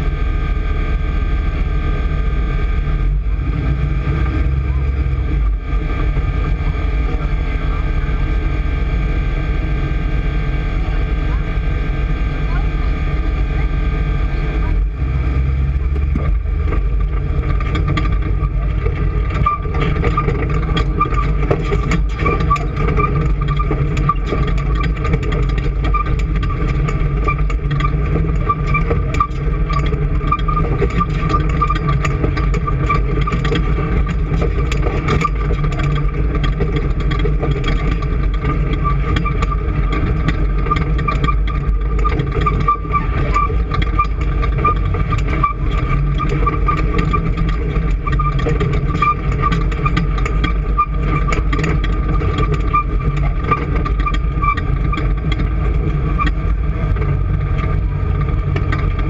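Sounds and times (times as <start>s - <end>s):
engine running: 0.0s - 59.0s
engine whine: 0.0s - 59.0s
light rattling ticks: 16.0s - 59.0s.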